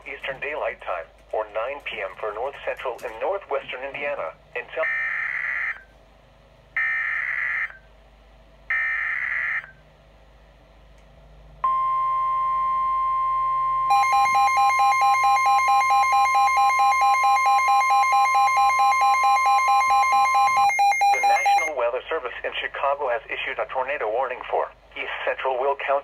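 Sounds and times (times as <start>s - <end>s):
steady warning tone: 11.6s - 22.3s
rapid pulsing alarm beep: 11.7s - 21.8s.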